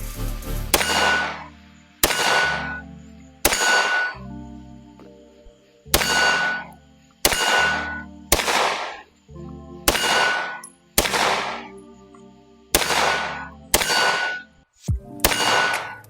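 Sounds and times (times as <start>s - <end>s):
background music: 0.0s - 16.0s
pistol shots: 0.7s - 4.2s, 5.9s - 9.2s, 9.9s - 11.8s, 12.7s - 14.5s, 15.2s - 16.0s.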